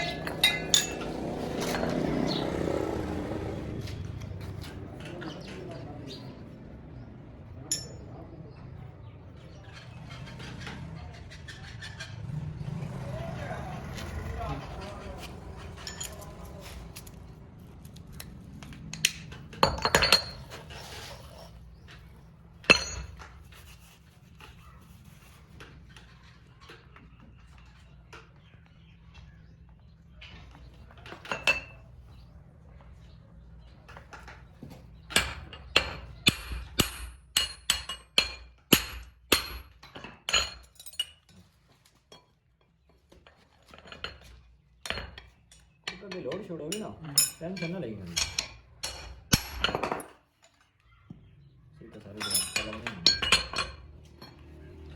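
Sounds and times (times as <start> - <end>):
ringing metal taps: 0.0 - 2.0, 7.7 - 8.2, 22.6 - 23.4, 43.3 - 50.2, 52.2 - 54.5
metal tools clinking: 0.0 - 2.4, 7.7 - 8.1, 13.9 - 24.6, 31.0 - 31.9, 39.4 - 42.4, 43.2 - 50.7, 52.0 - 54.9.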